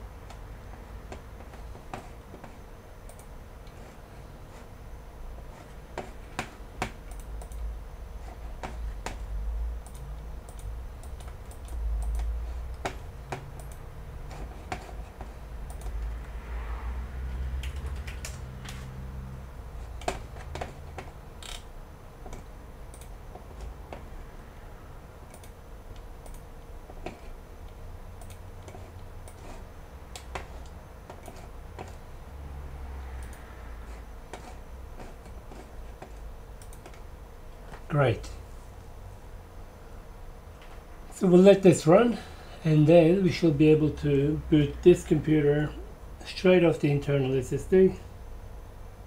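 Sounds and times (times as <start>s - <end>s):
computer keyboard and mouse clicks: 6.0s - 7.6s, 8.6s - 16.1s, 17.6s - 18.8s, 25.3s - 26.4s, 28.2s - 32.0s.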